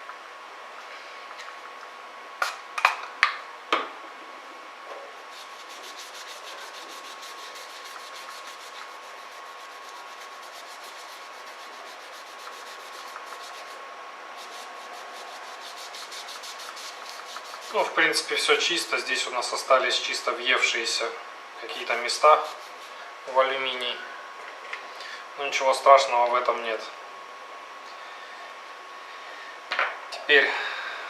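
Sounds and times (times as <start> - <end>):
scrubbing heatsink: 5.2 - 19.3, 21.6 - 23.7.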